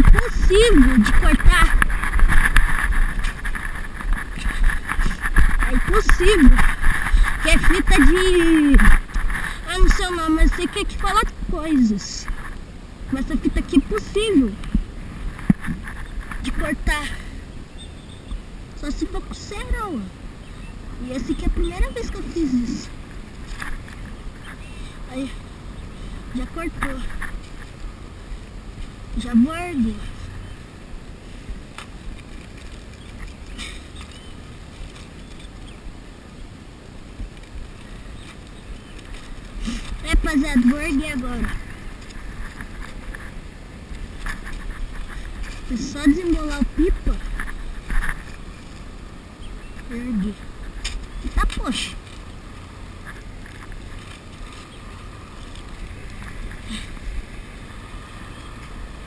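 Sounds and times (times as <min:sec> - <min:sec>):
brief rustle: 0:00.0 - 0:10.0, 0:37.3 - 0:46.4
wind rumbling on microphone: 0:00.0 - 0:59.0.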